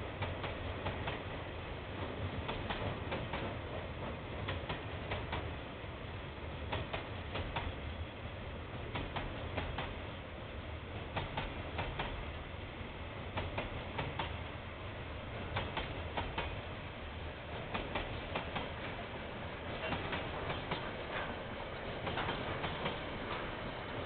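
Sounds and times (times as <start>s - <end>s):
low train rumble: 0.0s - 24.0s
train wheels clicking over rail joints: 0.1s - 1.3s, 2.0s - 5.5s, 6.7s - 7.8s, 8.8s - 10.0s, 11.0s - 12.3s, 13.3s - 14.5s, 15.3s - 16.7s, 17.5s - 24.0s.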